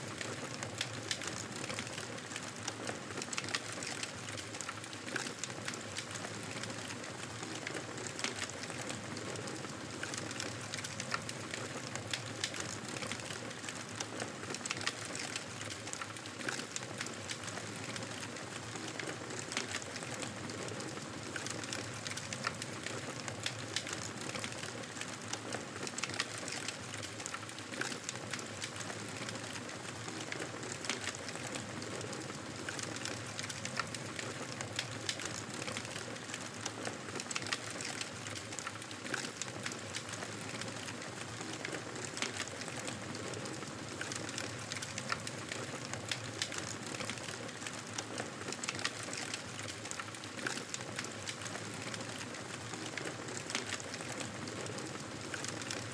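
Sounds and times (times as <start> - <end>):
campfire crackling and popping: 21.3 - 55.9.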